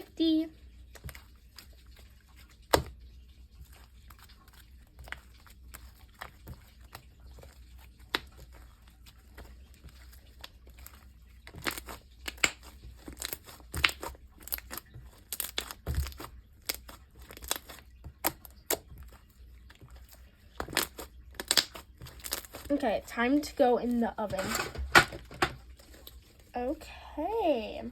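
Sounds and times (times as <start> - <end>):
slime dough tearing and popping: 0.8 - 22.8.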